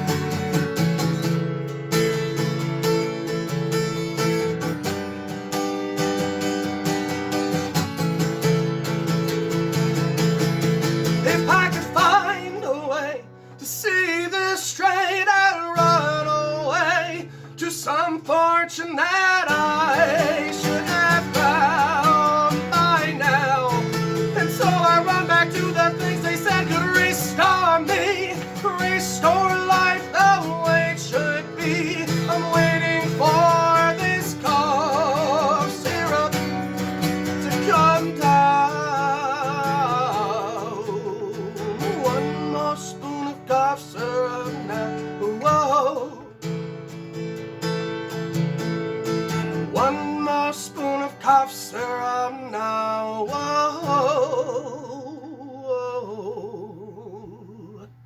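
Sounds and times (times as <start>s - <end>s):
strummed acoustic guitar: 0.0s - 58.0s
person singing: 11.0s - 46.4s, 49.7s - 58.0s.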